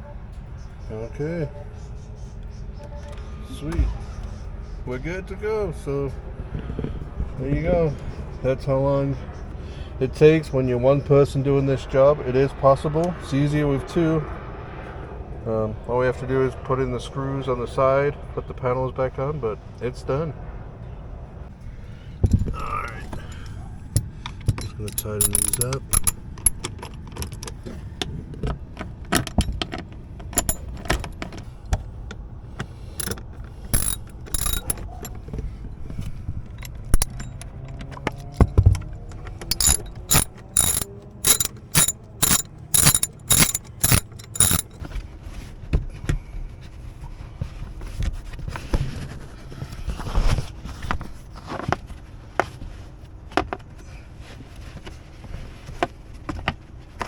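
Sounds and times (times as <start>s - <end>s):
hand tool clicks and knocks: 24.5s - 26.7s, 30.4s - 31.1s, 33.8s - 35.1s, 36.6s - 38.6s, 39.5s - 44.8s
regular sharp ratchet clicks: 24.6s - 26.7s, 30.4s - 31.1s, 33.8s - 35.1s, 36.6s - 37.4s, 39.5s - 44.8s.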